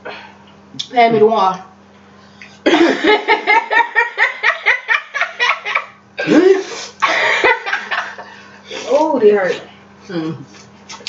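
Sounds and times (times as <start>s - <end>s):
woman laughing hard: 2.7s - 8.5s.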